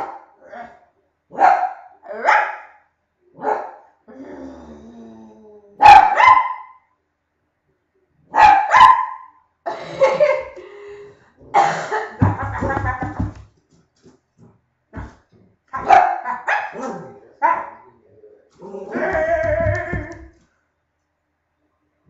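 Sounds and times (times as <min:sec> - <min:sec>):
dog barking: 0:00.0 - 0:00.4, 0:01.3 - 0:03.9, 0:05.8 - 0:06.8, 0:08.3 - 0:09.4, 0:15.7 - 0:17.9.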